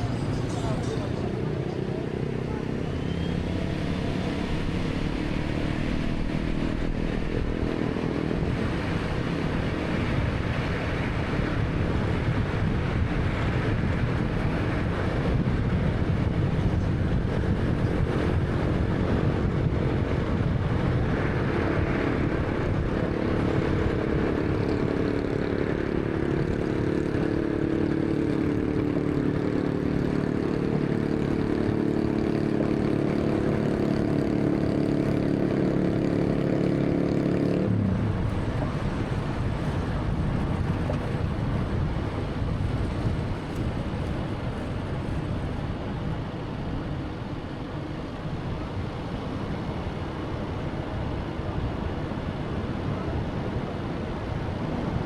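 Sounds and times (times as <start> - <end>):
road and tyre noise: 0.0 - 55.0
car engine running: 23.6 - 45.6.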